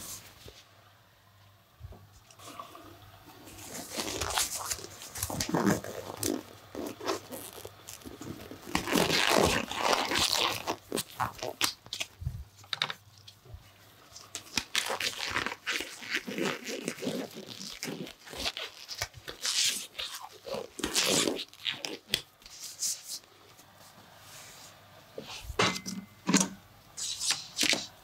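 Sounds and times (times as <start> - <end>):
hands rubbing and crinkling: 3.4 - 25.6.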